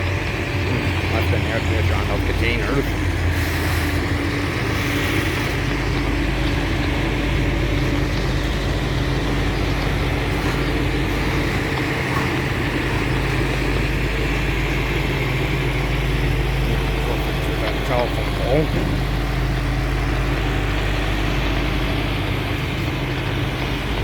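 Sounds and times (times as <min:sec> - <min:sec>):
constant low hum: 0:00.0 - 0:24.0
freight train rumbling past: 0:00.0 - 0:24.0.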